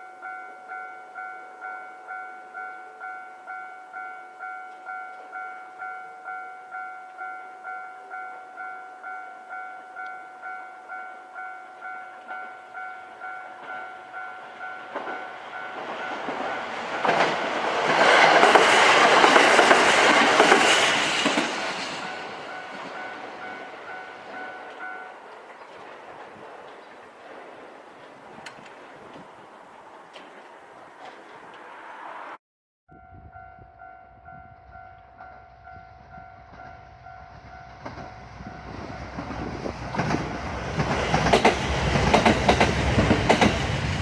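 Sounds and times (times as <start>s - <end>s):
level crossing warning bell: 0.0s - 27.2s, 33.0s - 44.0s
diesel railcar passing: 0.0s - 32.4s, 33.3s - 44.0s
wheels knocking over rail joints: 14.8s - 32.1s.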